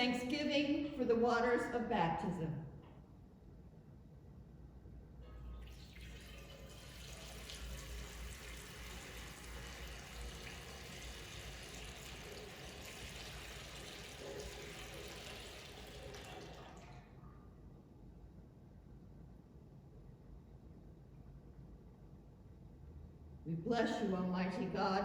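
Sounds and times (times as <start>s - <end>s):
water pouring and splashing: 5.6s - 17.2s.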